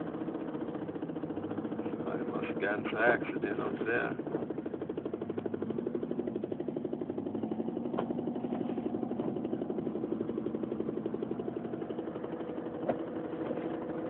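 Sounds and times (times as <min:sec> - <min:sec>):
engine throbbing inside cabin: 0:00.0 - 0:14.0.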